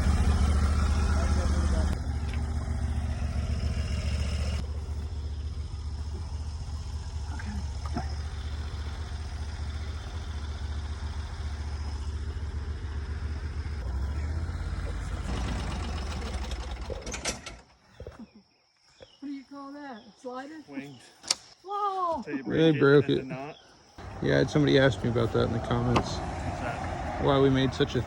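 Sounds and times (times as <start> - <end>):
sawmill engine low drone: 0.0 - 17.6, 24.0 - 28.0.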